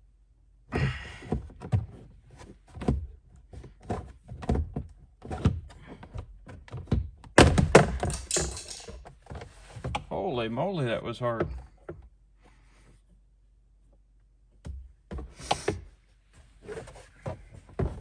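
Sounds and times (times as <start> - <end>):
plastic trim knocking and thumping: 6.7 - 8.9
plastic clattering: 7.4 - 9.1.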